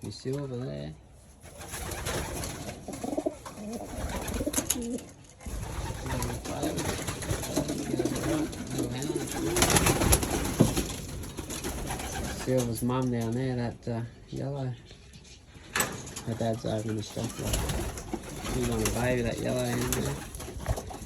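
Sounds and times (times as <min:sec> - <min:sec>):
pigeons cooing: 0:01.5 - 0:12.8, 0:17.1 - 0:21.0.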